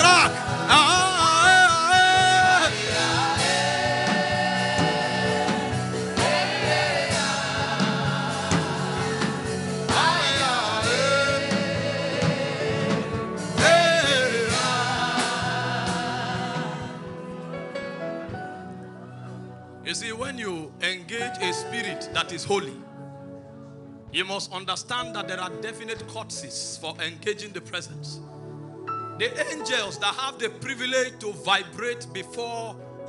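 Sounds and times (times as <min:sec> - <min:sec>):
gospel singing: 0:00.0 - 0:19.3
instrumental backing: 0:00.0 - 0:33.0.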